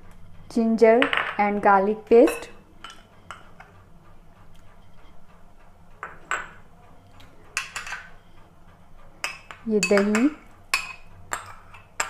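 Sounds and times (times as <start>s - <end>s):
low steady hum: 0.0s - 12.0s
spoon clinking against bowl: 9.2s - 12.0s.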